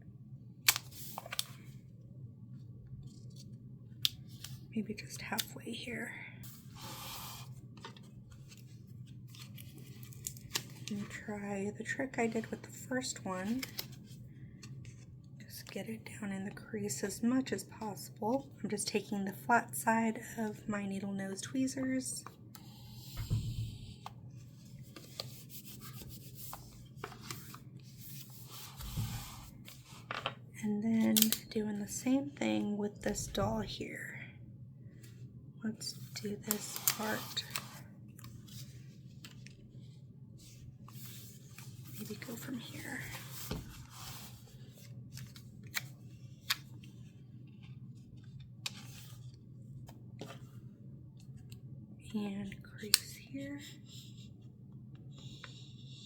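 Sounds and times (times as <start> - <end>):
low steady hum: 0.0 - 56.0
soft paper rubbing: 6.4 - 11.4, 22.2 - 30.1, 35.9 - 51.5, 53.6 - 54.5, 55.1 - 56.0.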